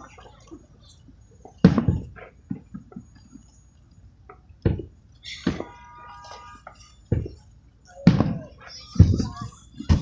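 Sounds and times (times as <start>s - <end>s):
fireworks booming: 1.4s - 3.4s, 4.3s - 7.4s, 8.0s - 10.0s.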